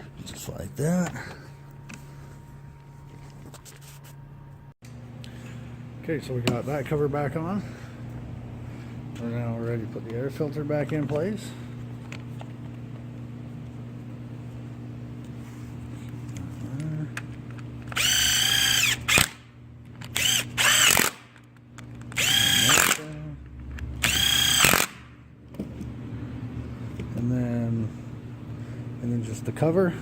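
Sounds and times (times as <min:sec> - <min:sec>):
cordless drill whining: 0:17.9 - 0:19.4, 0:20.1 - 0:21.3, 0:22.1 - 0:23.1, 0:24.0 - 0:25.0.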